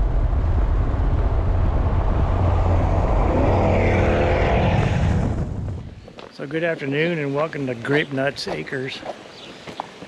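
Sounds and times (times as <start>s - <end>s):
vehicle engine rumbling: 0.0s - 6.2s.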